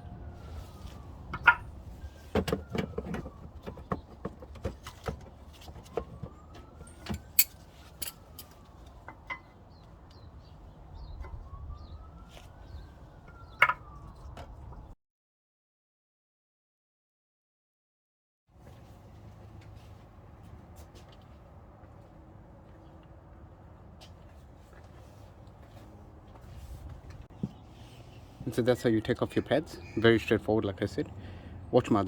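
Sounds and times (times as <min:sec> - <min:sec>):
faint siren wailing: 0:00.0 - 0:15.0, 0:21.6 - 0:31.6
metallic clicks and clinks: 0:07.2 - 0:08.5.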